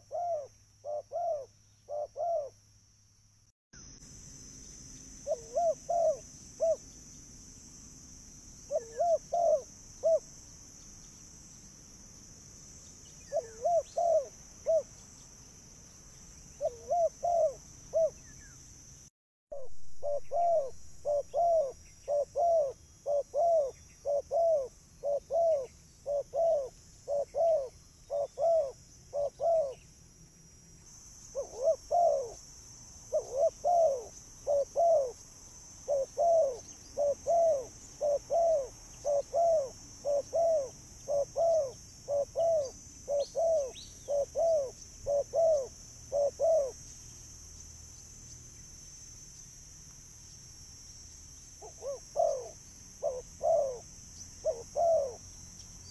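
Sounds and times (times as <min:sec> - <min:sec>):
dove cooing: 0:00.0 - 0:02.6, 0:05.2 - 0:06.9, 0:08.7 - 0:10.3, 0:13.3 - 0:14.9, 0:16.6 - 0:18.2, 0:19.6 - 0:29.8, 0:31.4 - 0:32.4, 0:33.1 - 0:35.2, 0:35.8 - 0:46.8, 0:51.6 - 0:53.8, 0:54.4 - 0:55.2
steady high hiss: 0:03.8 - 0:13.3.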